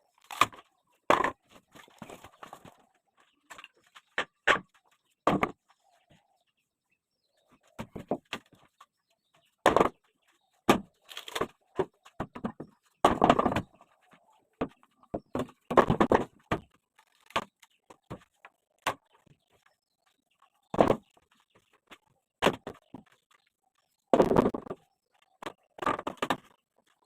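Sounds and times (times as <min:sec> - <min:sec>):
boards clattering and scraping: 0:00.2 - 0:05.7, 0:09.5 - 0:19.7, 0:24.1 - 0:27.0
wood and metal knocks and bangs: 0:14.6 - 0:17.5.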